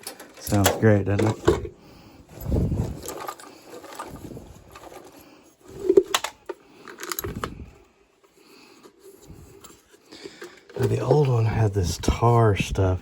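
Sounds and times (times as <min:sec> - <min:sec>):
metal tools clinking and knocking: 0:00.0 - 0:07.5.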